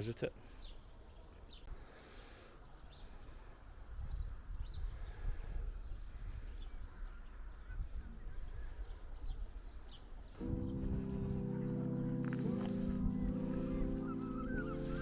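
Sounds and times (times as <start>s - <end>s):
wind buffeting microphone: 3.8s - 15.0s
faint bird calls: 4.6s - 15.0s.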